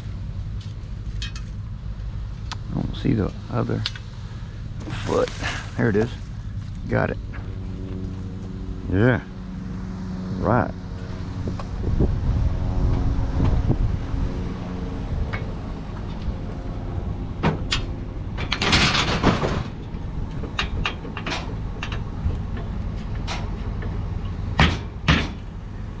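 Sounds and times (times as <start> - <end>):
steady engine hum: 0.0 - 26.0
scraping rush: 4.8 - 6.9
metal parts knocking and clanking: 18.4 - 24.0.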